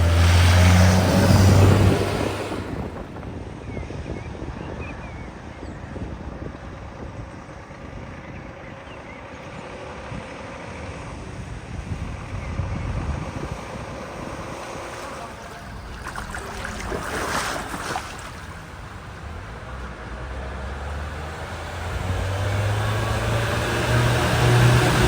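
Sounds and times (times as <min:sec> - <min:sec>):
tyres throwing up water spray: 0:00.0 - 0:03.2, 0:14.2 - 0:25.0
engine hum: 0:00.0 - 0:25.0
wind buffeting microphone: 0:00.0 - 0:25.0.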